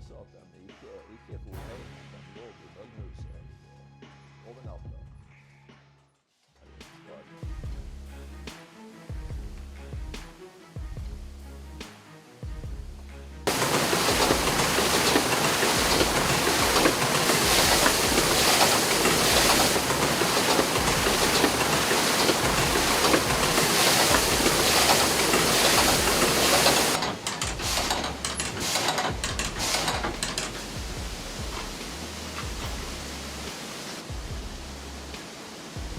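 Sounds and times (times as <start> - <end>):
rushing water: 13.5 - 35.9
sawmill machinery noise: 13.5 - 35.9.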